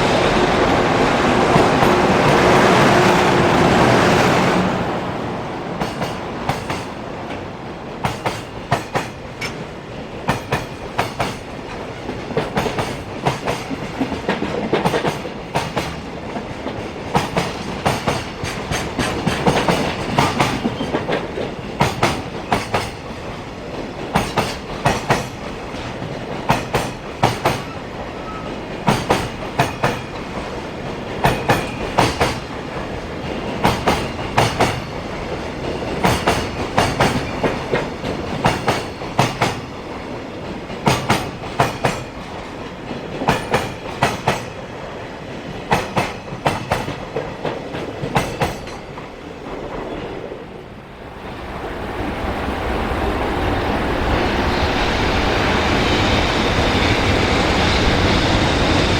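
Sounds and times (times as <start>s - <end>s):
train rolling rumble: 0.0s - 58.9s
train wheels clattering over rail joints: 8.0s - 50.0s.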